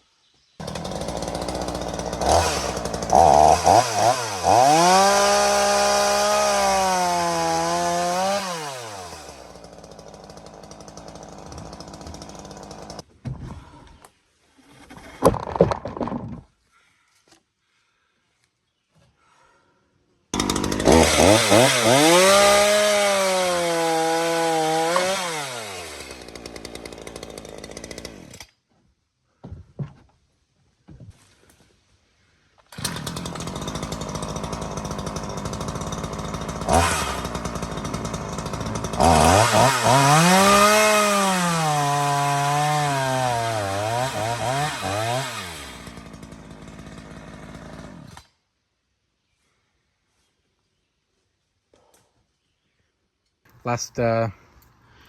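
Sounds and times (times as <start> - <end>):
chainsaw cutting wood: 0.6 - 13.1, 20.3 - 28.6, 32.6 - 48.4.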